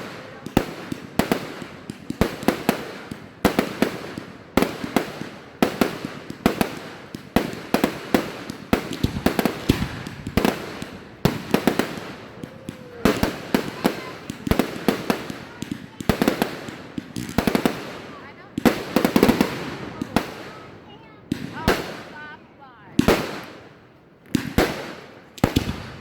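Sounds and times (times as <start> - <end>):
fireworks bangs echoing: 0.0 - 26.0.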